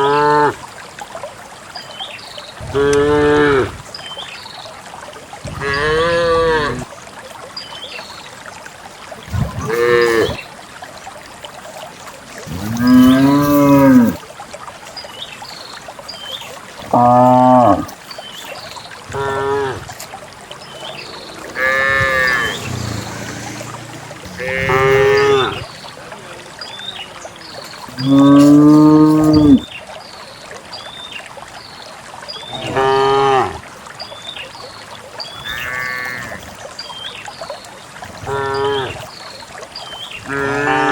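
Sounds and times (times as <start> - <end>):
cows mooing: 2.6 - 3.8, 9.6 - 10.4, 12.5 - 14.2, 16.9 - 17.9, 19.1 - 26.2, 27.9 - 29.6, 40.3 - 40.9.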